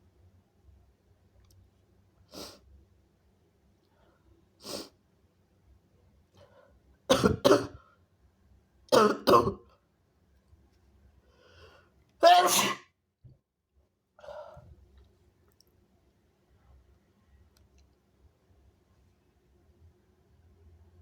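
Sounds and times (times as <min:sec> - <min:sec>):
person sneezing: 0:12.2 - 0:12.9.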